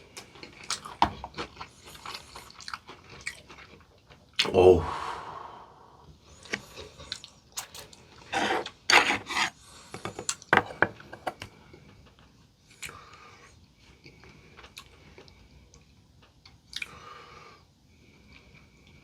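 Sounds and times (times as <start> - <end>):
crunching fried chicken: 0.2 - 4.3.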